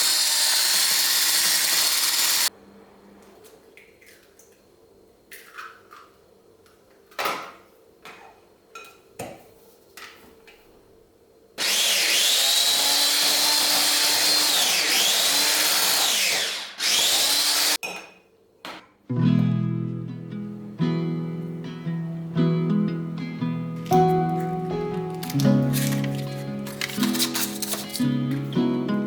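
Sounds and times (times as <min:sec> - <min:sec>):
high-speed electric motor whine: 0:00.0 - 0:02.5.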